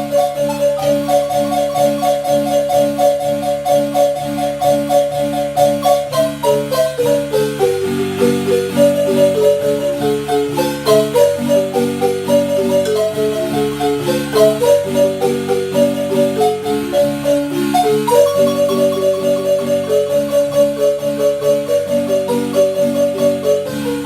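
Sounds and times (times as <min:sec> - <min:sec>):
marimba playing a tune: 0:00.0 - 0:24.0.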